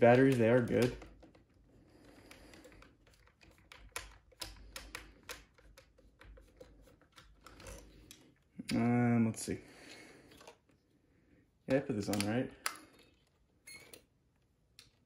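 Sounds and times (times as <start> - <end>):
plastic toy clicks and taps: 0.0 - 1.4, 2.3 - 6.4.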